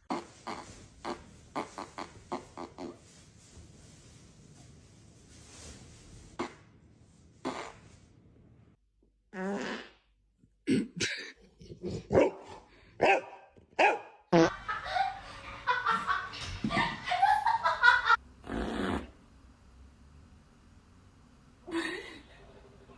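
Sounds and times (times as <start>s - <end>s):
fart: 0.0s - 3.1s, 6.4s - 6.7s, 7.4s - 8.0s, 9.3s - 10.1s, 18.4s - 19.2s
dog barking sharply: 12.1s - 14.2s.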